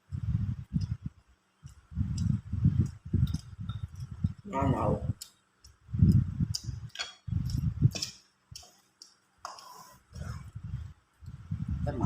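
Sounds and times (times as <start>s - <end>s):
chewing food: 1.6s - 4.4s, 5.1s - 10.6s.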